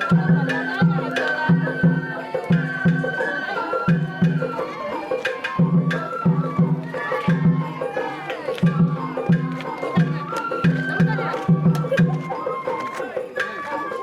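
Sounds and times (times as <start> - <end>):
taiko drum beat: 0.0 - 12.6
bamboo flute: 0.0 - 14.0.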